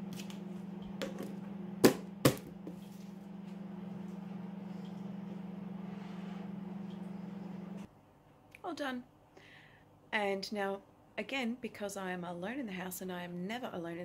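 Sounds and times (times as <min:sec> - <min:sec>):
steady low hum: 0:00.0 - 0:08.4.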